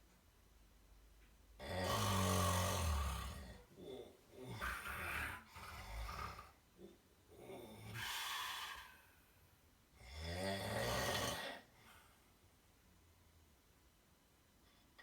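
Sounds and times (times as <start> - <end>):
person snoring: 1.6 - 6.5, 10.1 - 11.6.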